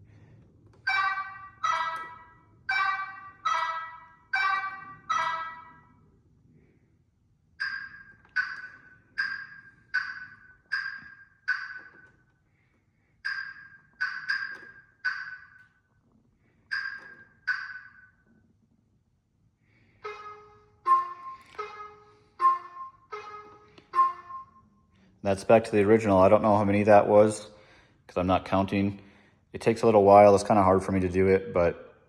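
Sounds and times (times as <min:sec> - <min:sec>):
scooter turn-signal chime beeping: 0:00.9 - 0:05.8.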